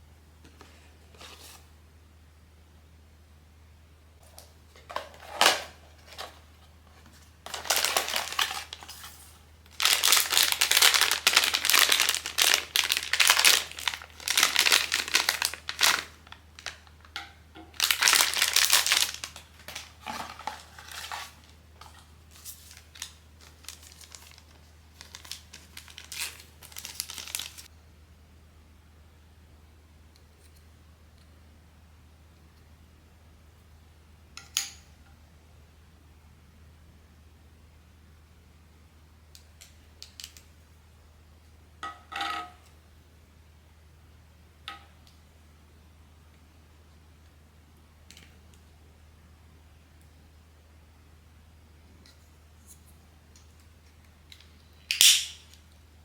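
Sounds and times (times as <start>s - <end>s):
plastic packaging crinkling: 7.0s - 27.7s.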